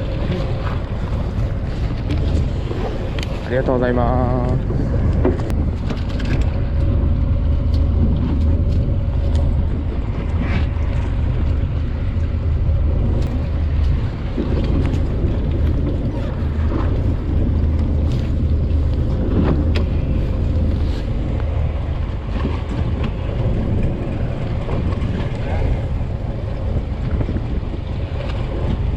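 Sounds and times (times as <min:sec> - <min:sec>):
boat engine droning: 0:00.0 - 0:28.9.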